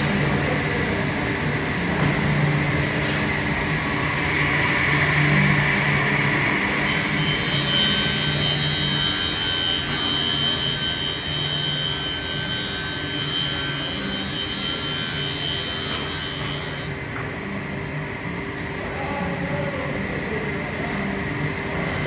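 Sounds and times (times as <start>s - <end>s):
power tool high whine: 4.2s - 17.0s, 21.8s - 22.0s.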